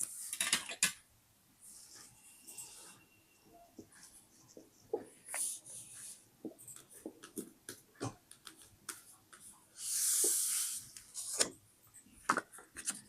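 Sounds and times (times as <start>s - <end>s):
paper taps and crinkles: 6.5s - 9.5s.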